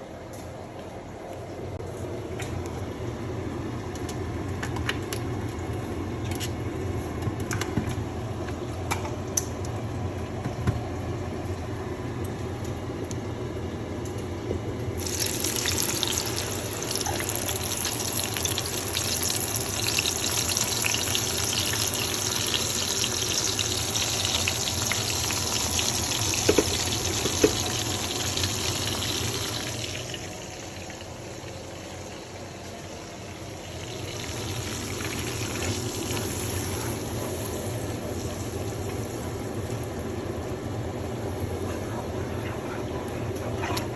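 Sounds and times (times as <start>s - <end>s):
water running from tap: 15.0s - 31.2s, 33.8s - 40.0s.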